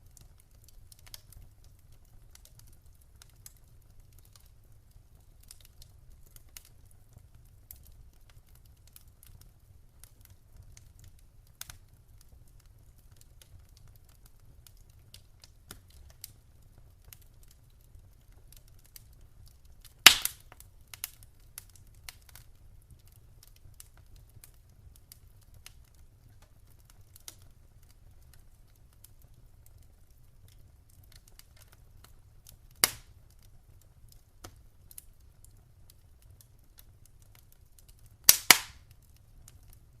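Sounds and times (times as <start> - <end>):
wood fire crackling: 0.0 - 40.0
loud fire pops: 19.9 - 21.1, 32.8 - 33.2, 38.2 - 39.0.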